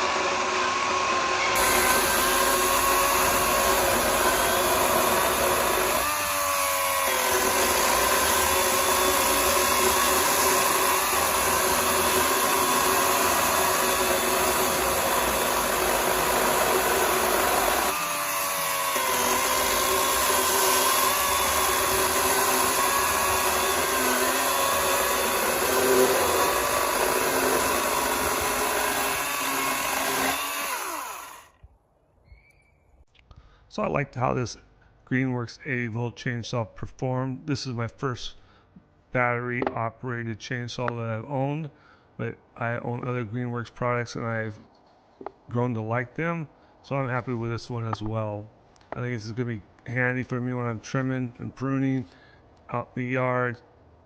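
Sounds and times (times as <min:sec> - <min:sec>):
chainsaw cutting wood: 0:00.0 - 0:31.6.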